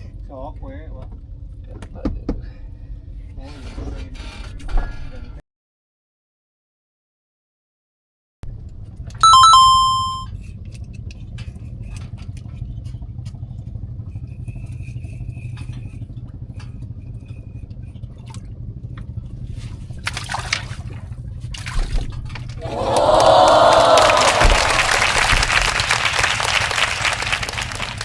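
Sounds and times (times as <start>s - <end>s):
electronic chime: 9.2s - 10.3s
low engine-like hum: 10.3s - 28.0s.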